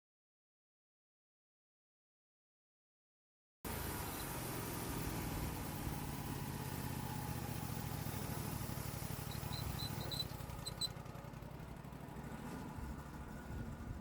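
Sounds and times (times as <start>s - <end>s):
sawmill engine running: 3.7s - 14.0s.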